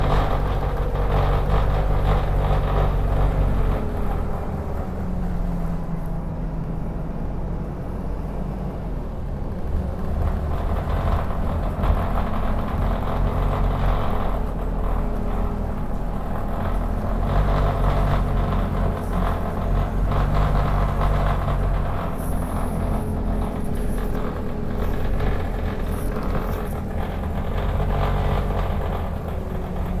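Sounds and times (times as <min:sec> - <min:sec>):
unusual engine noise: 0:00.0 - 0:30.0
vehicle engine running: 0:00.0 - 0:30.0.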